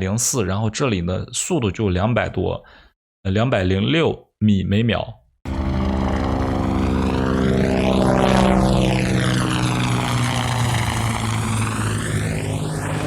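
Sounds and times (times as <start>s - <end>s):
helicopter engine and rotor drone: 5.5s - 13.0s.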